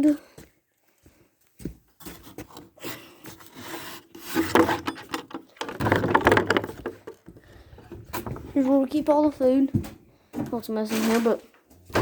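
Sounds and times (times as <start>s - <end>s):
wooden door dragged open scraping: 3.3s - 9.5s.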